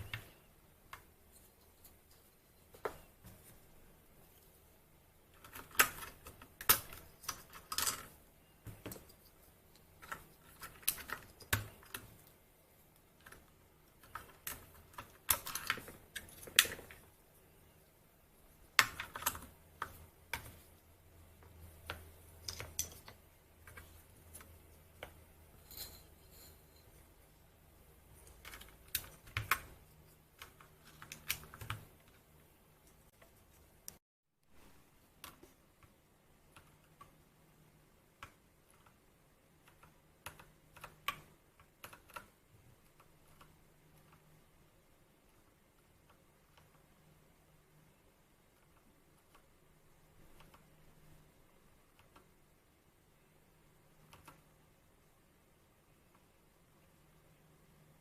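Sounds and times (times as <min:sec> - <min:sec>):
mechanical keyboard typing: 0:13.2 - 0:17.0, 0:30.4 - 0:32.2, 0:39.6 - 0:44.2.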